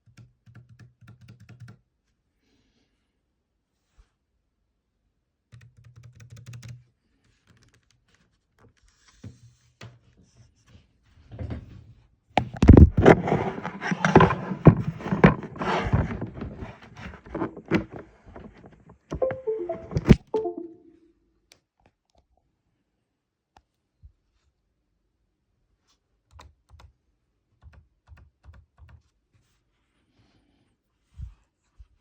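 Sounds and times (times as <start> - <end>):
keyboard being handled: 12.4 - 20.7
keyboard keys clicking: 17.3 - 20.9.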